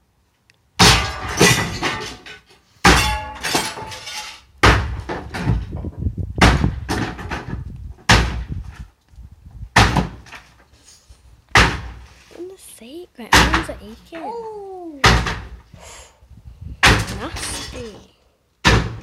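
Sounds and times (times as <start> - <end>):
heavy blows against a shed: 0.8 - 4.0, 4.6 - 10.6, 11.5 - 12.2, 13.3 - 14.2, 14.9 - 19.0.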